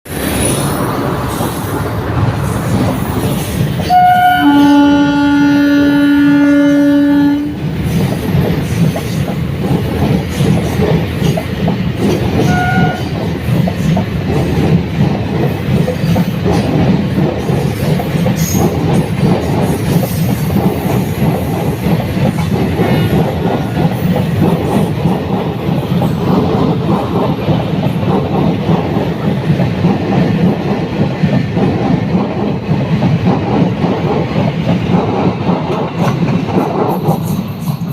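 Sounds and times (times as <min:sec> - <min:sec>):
train wheels clacking on rails: 0:00.1 - 0:37.9
train horn: 0:03.8 - 0:07.6, 0:12.4 - 0:13.1.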